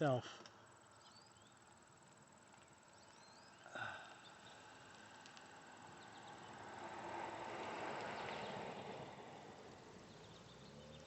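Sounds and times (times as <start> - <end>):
bird chirps: 0.8 - 1.7, 2.9 - 4.6.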